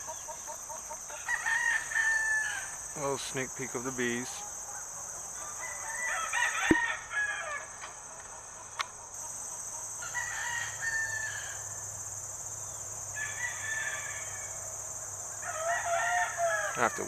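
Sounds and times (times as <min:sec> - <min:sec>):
roosters crowing: 0:00.0 - 0:02.9, 0:05.3 - 0:08.0, 0:09.2 - 0:12.4, 0:13.0 - 0:17.0.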